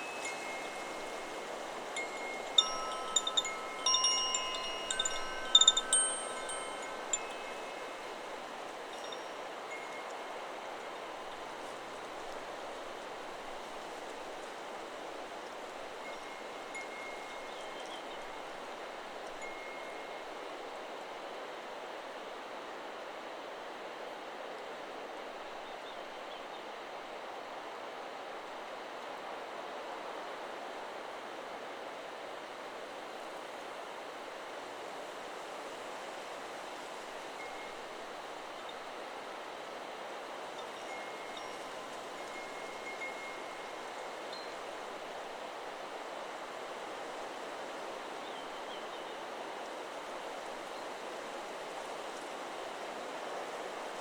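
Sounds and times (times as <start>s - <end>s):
chime ringing: 0.0s - 8.0s
leaves rustling: 0.0s - 18.5s, 34.7s - 54.0s
wind rushing through trees: 0.0s - 54.0s.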